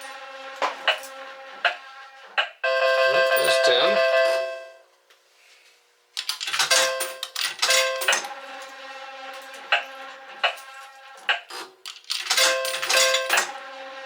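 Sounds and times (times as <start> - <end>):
slot machine electronic jingle: 2.6 - 4.8, 6.6 - 8.3, 12.4 - 13.4
coins clinking on metal: 6.2 - 8.3, 11.8 - 13.5.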